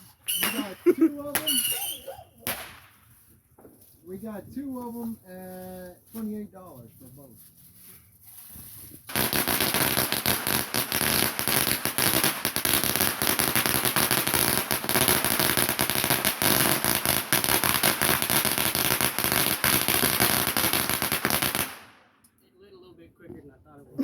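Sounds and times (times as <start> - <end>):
firework crackling and hissing: 0.0 - 3.3, 8.3 - 22.1.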